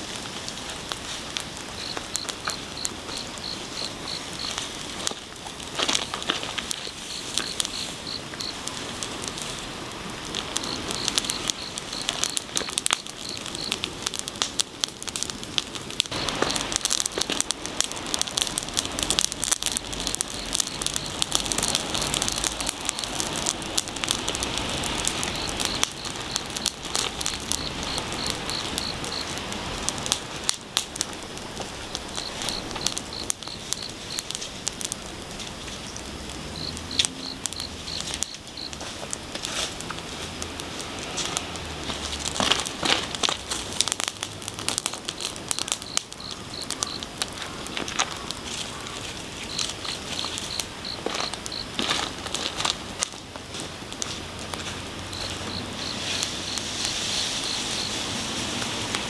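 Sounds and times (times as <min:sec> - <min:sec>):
bonfire crackling and popping: 0:00.0 - 0:59.0
high insect chirp: 0:01.6 - 0:04.6, 0:06.0 - 0:08.8, 0:09.4 - 0:13.8, 0:18.9 - 0:30.4, 0:31.0 - 0:38.9, 0:45.5 - 0:52.0, 0:54.9 - 0:58.1.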